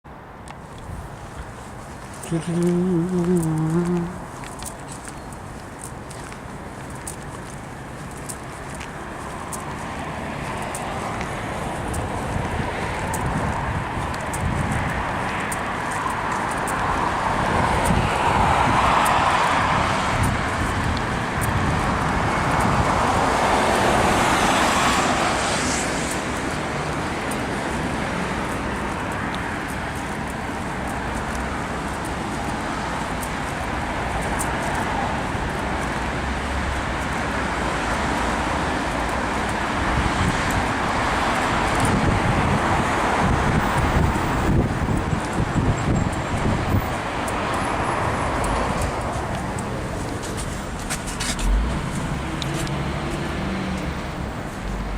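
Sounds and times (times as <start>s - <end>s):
traffic passing: 0.0s - 54.9s.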